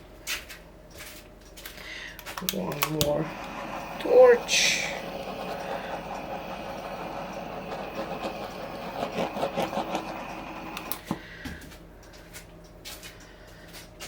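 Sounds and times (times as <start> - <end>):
torch switch click: 2.3 - 4.1, 10.7 - 11.2
torch flame hissing: 2.6 - 11.2.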